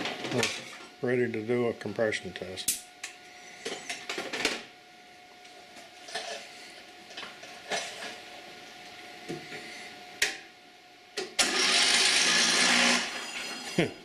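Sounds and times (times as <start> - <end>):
electric starter cranking engine: 11.4 - 13.8.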